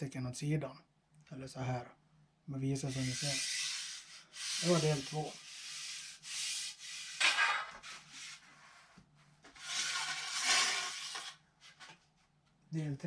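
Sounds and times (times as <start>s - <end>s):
fishing pole sections scraping: 2.9s - 8.5s, 9.5s - 11.8s.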